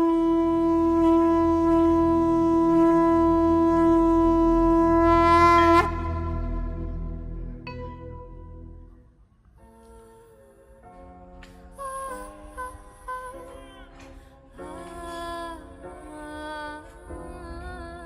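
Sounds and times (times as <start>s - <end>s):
conch shell blown: 0.0s - 7.3s
low rumble: 1.8s - 9.0s.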